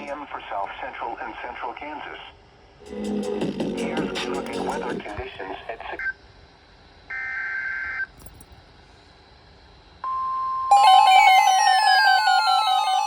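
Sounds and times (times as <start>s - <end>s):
warbling electronic alert: 10.7s - 13.0s.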